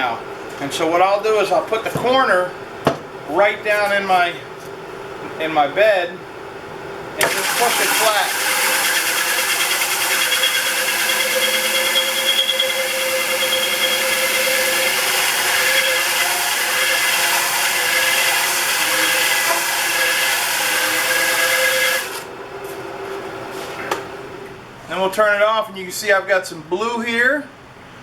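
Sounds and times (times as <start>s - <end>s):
wood lathe humming: 7.2s - 22.4s.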